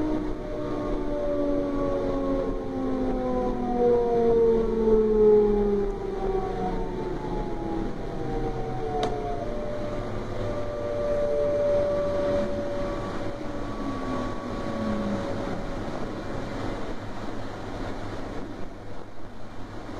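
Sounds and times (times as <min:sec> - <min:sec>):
train running noise: 0:05.9 - 0:19.9.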